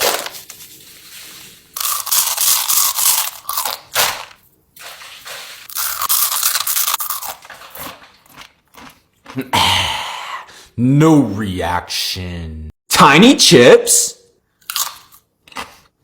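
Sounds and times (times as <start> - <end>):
crunching and chewing crisp food: 0.0 - 4.4, 5.7 - 9.5, 14.6 - 16.0.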